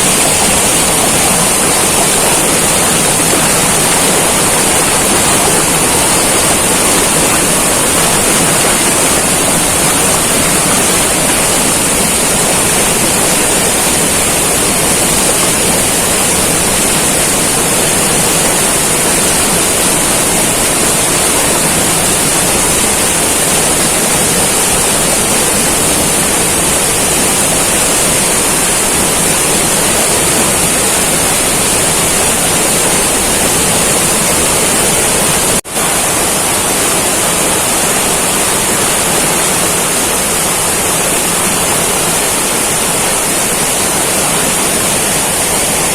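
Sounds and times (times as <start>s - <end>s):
heavy rain pouring: 0.0s - 45.9s.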